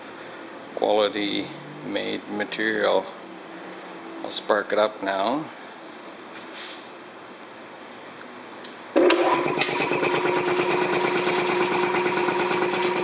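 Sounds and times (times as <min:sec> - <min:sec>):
air compressor pulsing: 0:09.0 - 0:13.0.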